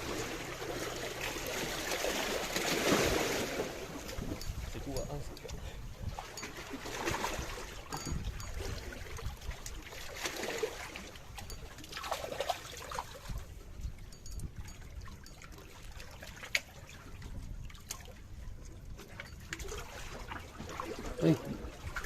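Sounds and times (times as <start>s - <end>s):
water trickling and splashing: 0.0s - 22.0s.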